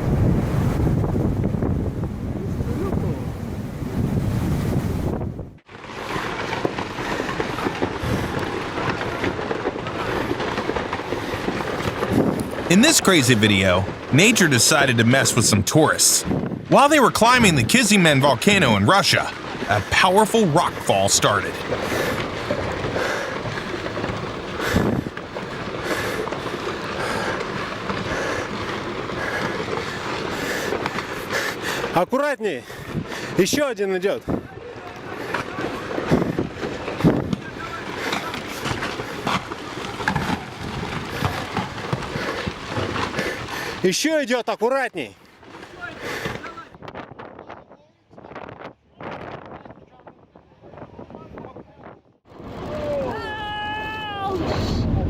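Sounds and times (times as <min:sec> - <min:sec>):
clatter of small hard impacts: 0:05.7 - 0:12.7, 0:21.4 - 0:32.0, 0:34.2 - 0:43.9
loud rock crash: 0:16.2 - 0:32.0, 0:34.2 - 0:43.9.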